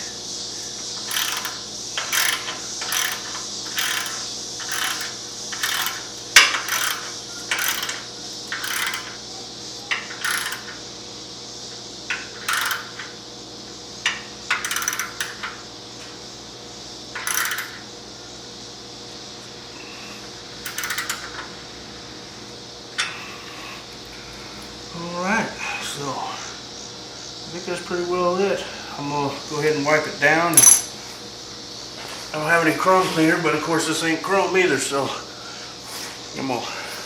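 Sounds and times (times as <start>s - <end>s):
hand ratchet clicking: 1.1s - 9.1s, 10.2s - 10.6s, 30.6s - 30.9s
sharp metal click: 30.6s - 30.9s.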